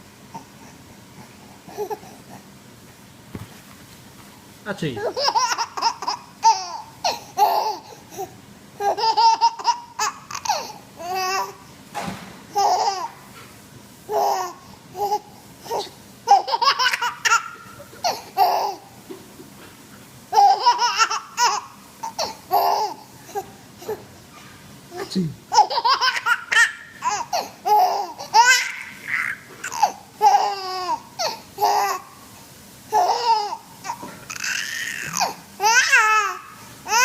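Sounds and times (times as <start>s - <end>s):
baby laughing: 1.7s - 2.2s, 5.0s - 11.5s, 12.5s - 13.2s, 14.1s - 18.8s, 20.3s - 24.1s, 24.9s - 32.1s, 32.9s - 37.0s.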